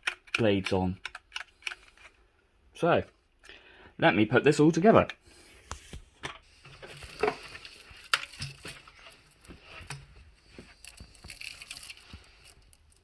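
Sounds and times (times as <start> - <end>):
plastic parts clicking and knocking: 0.0 - 2.2, 6.2 - 13.0.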